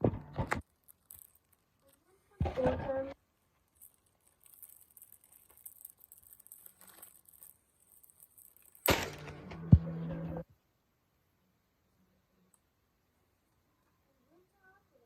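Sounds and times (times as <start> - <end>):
plastic wrapping crinkling: 0.5 - 2.4, 3.4 - 9.6.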